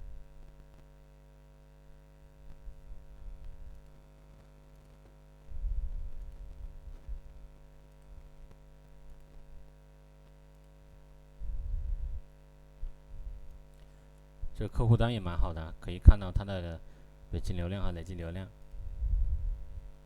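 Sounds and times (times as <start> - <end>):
electrical mains hum: 0.0 - 20.0
low rumble against microphone: 5.5 - 7.4, 11.4 - 13.6, 14.4 - 20.0.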